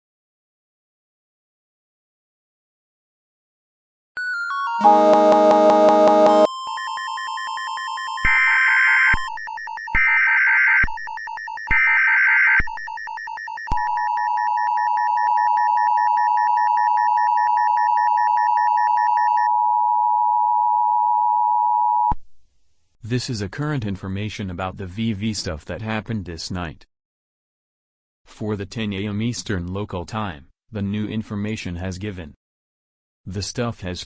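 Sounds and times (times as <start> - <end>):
synthesized falling run of notes: 4.7 - 6.5
steady electronic tone: 4.8 - 6.5
buzzing alert data tones: 4.8 - 18.7
two-tone attention signal: 4.8 - 19.7.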